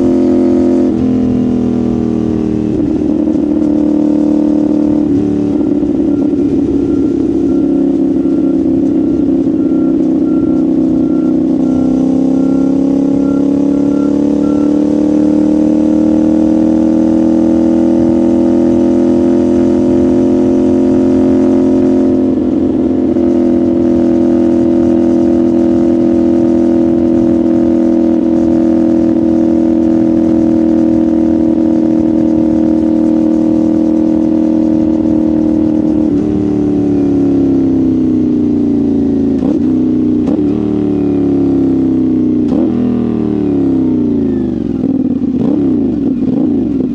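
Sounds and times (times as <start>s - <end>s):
motorcycle engine and exhaust: 0.0s - 46.9s
throttle blips: 5.4s - 15.2s.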